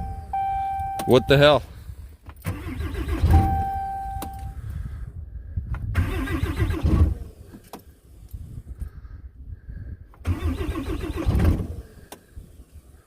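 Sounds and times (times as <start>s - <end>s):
dashboard warning beep: 0.0s - 1.5s, 3.2s - 4.6s
diesel engine cranking: 2.3s - 4.6s, 5.8s - 8.5s, 10.2s - 13.0s.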